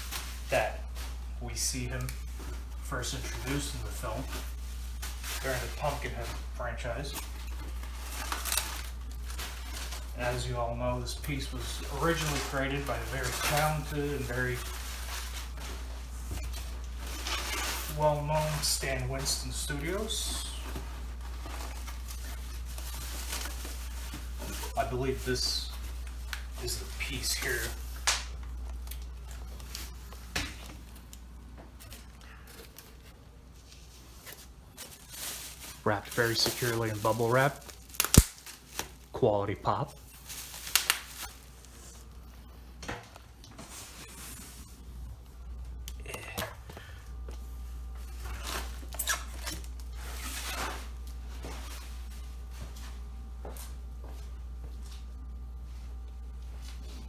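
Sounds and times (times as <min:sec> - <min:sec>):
packing material rustling: 0:00.0 - 0:39.2, 0:39.9 - 0:42.2
steady low hum: 0:00.0 - 0:57.0.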